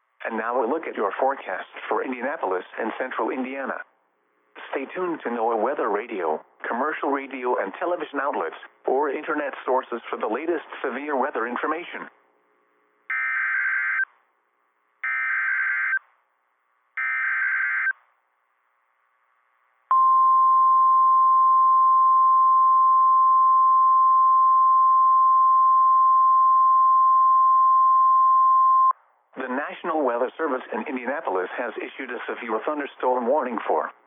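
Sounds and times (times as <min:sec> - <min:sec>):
screeching digital data tones: 0:13.1 - 0:14.0, 0:15.0 - 0:16.0, 0:17.0 - 0:18.0
steady alarm tone: 0:13.1 - 0:14.0, 0:15.0 - 0:16.0, 0:17.0 - 0:18.0.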